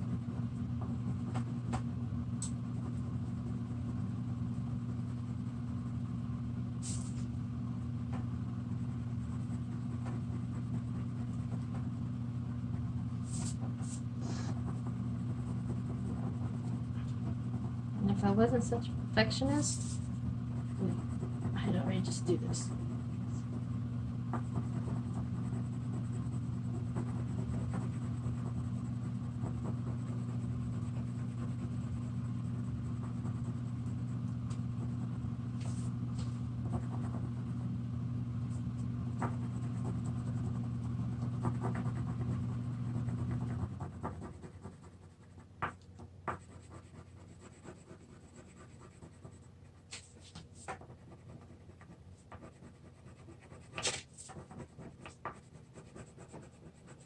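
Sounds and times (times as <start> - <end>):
steady low hum: 0.0 - 57.0
crayon scratching on paper: 8.7 - 12.0, 12.7 - 23.7, 24.4 - 34.2, 39.2 - 45.4, 46.3 - 57.0.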